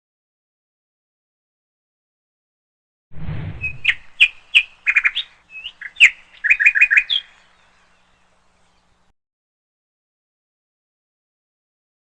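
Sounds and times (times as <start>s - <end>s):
brief low rumble: 3.1s - 4.2s
lovebirds chirping: 3.6s - 9.1s.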